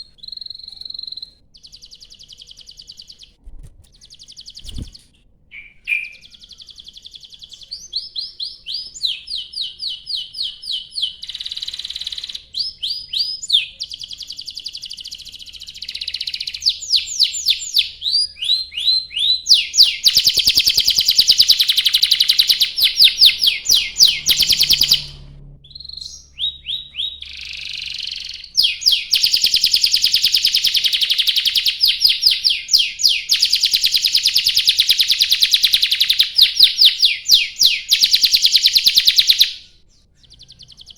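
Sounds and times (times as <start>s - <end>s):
canary singing trills: 0.0s - 40.9s.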